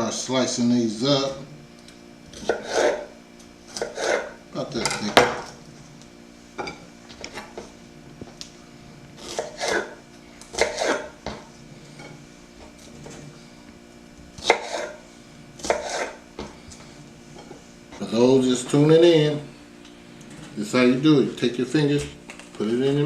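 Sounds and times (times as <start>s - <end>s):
knife slicing on cutting board: 2.4s - 3.1s, 3.7s - 4.4s, 9.2s - 10.0s, 10.6s - 11.2s, 14.4s - 15.0s, 15.6s - 16.2s.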